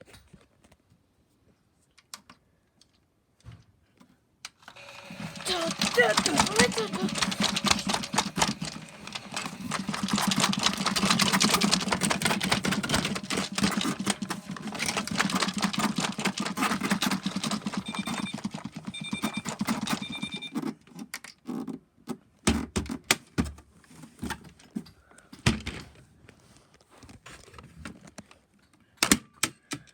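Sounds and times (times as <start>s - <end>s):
washing machine rattling: 4.8s - 20.5s.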